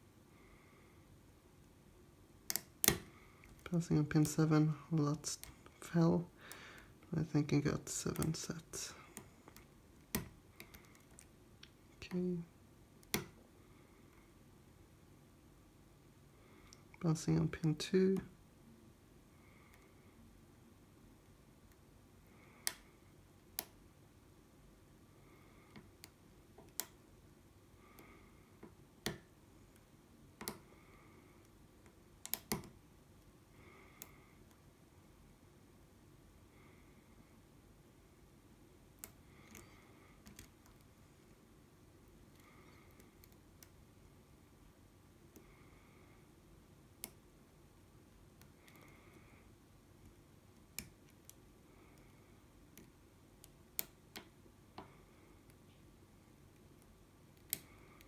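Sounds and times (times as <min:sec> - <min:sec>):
lock pick clicking in lock: 0:02.5 - 0:03.1.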